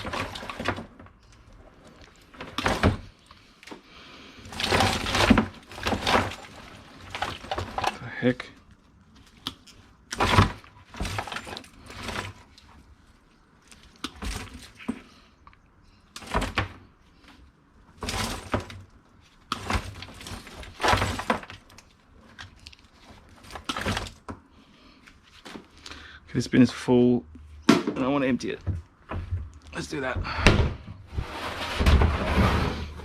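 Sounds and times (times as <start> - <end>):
scrap clattering into bins: 4.5 - 8.0, 19.6 - 21.6, 31.1 - 33.0.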